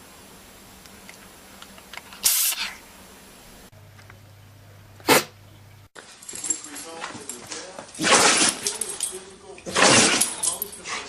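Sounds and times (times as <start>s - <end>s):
animal sneezing: 5.0s - 5.4s.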